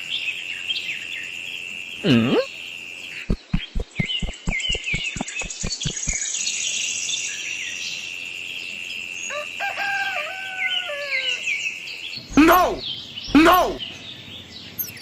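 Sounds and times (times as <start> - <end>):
high insect-like whine: 0.4 - 11.0
birds chirping: 3.1 - 6.5, 12.1 - 15.0
rapid low thuds: 3.3 - 6.2
rooster crowing: 9.3 - 11.4.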